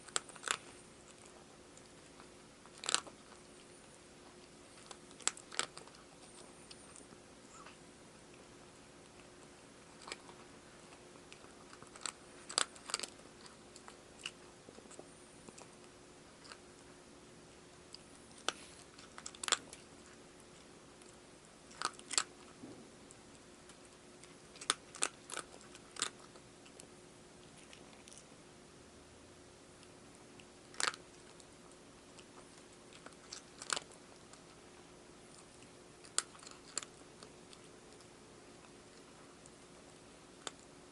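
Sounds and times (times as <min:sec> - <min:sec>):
cat crunching dry food: 0:00.0 - 0:28.4, 0:29.6 - 0:40.9.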